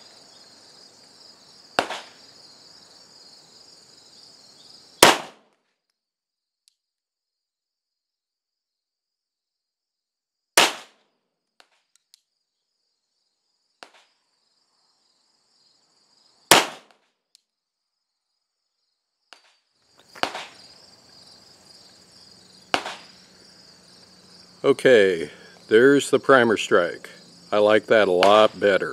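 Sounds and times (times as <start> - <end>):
insects chirping: 0.0 - 5.3, 5.9 - 28.9
pistol shots: 1.8 - 2.2, 5.0 - 5.4, 10.6 - 11.0, 16.5 - 16.9, 20.2 - 20.6, 22.7 - 23.2, 28.2 - 28.8.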